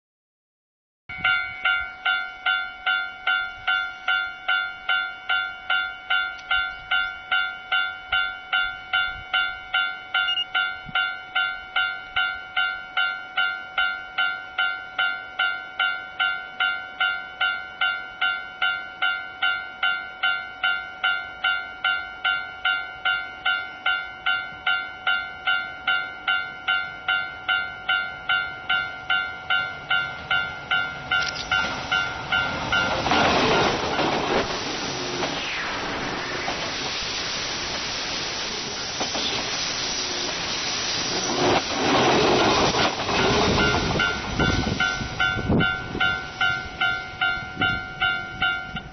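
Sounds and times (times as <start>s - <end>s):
level crossing warning bell: 1.1s - 34.5s, 42.4s - 48.9s.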